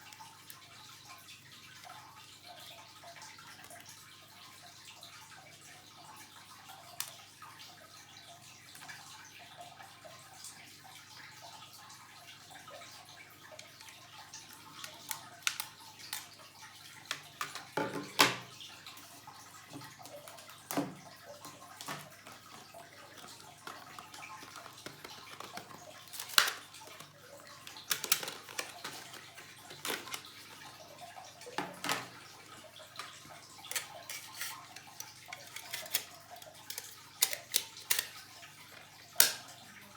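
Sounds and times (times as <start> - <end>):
small clicks and taps: 13.5 - 16.3, 17.1 - 18.5, 19.7 - 30.8.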